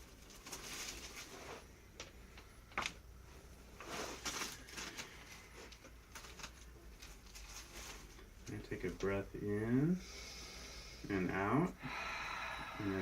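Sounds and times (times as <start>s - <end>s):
rustling and handling noises: 0.0s - 9.4s.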